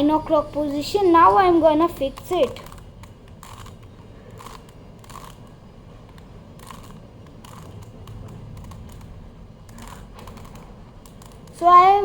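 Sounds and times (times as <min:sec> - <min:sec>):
puzzle cube clicking: 0:02.0 - 0:05.5, 0:06.1 - 0:11.6.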